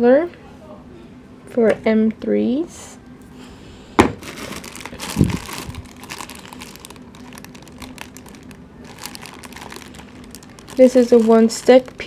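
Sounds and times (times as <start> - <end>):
packaging crinkling: 4.2 - 12.0.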